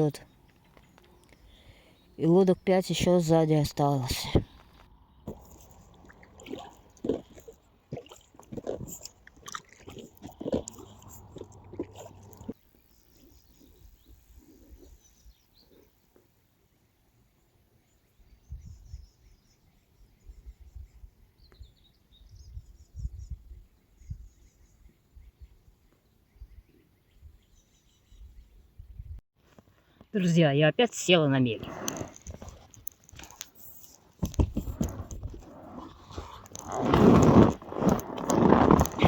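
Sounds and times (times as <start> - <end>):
faint birdsong chirping: 0.0 - 7.8, 10.7 - 30.9.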